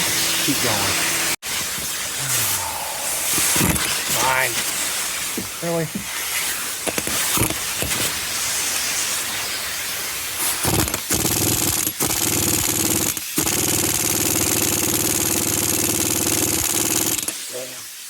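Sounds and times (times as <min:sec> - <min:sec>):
hiss: 0:00.0 - 0:18.0
air tool hammering: 0:06.8 - 0:08.1, 0:10.4 - 0:17.4.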